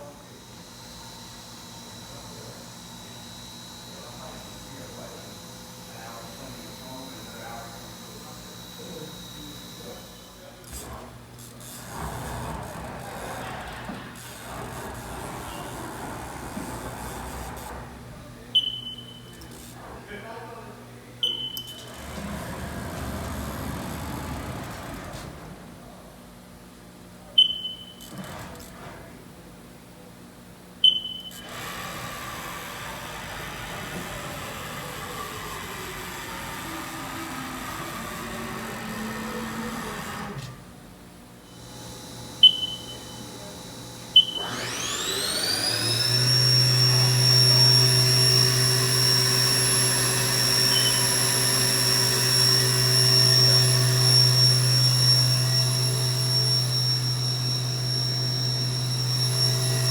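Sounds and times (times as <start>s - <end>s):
spindle high whine: 0.0s - 11.0s, 11.6s - 25.4s, 27.3s - 28.2s, 30.8s - 31.5s, 41.6s - 59.9s
motor whine gliding in pitch: 0.0s - 25.6s, 30.8s - 40.6s, 41.5s - 59.9s
control panel beeps: 18.6s - 19.5s, 21.2s - 21.8s, 27.4s - 28.0s, 30.8s - 31.4s, 42.4s - 43.3s, 44.2s - 44.6s, 50.7s - 51.3s.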